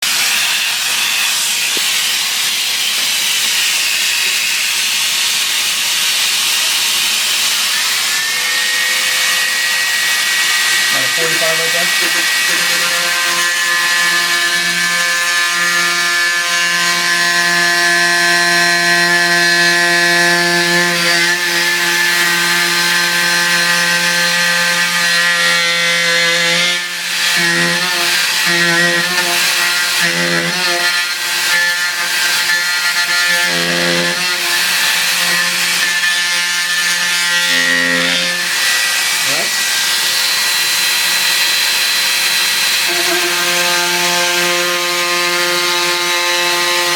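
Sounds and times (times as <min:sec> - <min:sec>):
power tool cutting drywall: 0:00.0 - 0:46.9.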